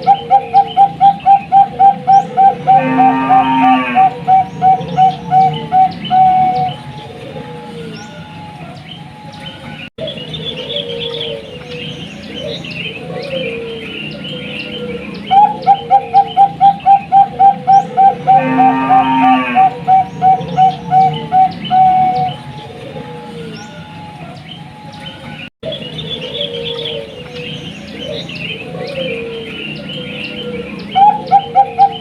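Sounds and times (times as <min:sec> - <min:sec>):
dove cooing: 0:00.0 - 0:09.4, 0:10.0 - 0:32.0
higher bird chirps: 0:00.0 - 0:22.9, 0:23.5 - 0:32.0.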